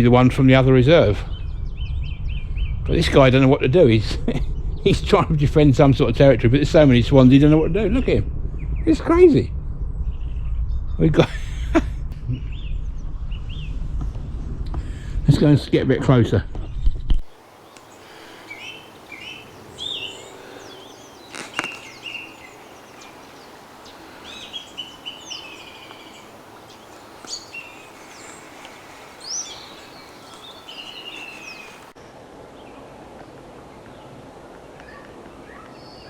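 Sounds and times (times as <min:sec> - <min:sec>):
small birds chirping: 0:00.0 - 0:03.7, 0:09.9 - 0:13.9, 0:17.2 - 0:32.0
steady outdoor hiss: 0:00.0 - 0:16.4, 0:17.1 - 0:36.0.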